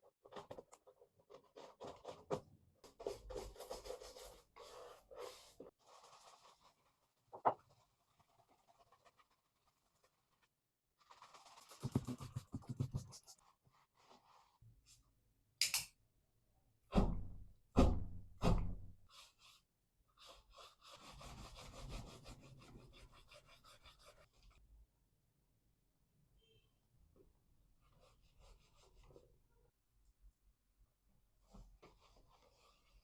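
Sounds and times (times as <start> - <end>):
brush scrubbing a shoe: 2.9 - 7.1, 11.0 - 14.6, 19.1 - 24.5.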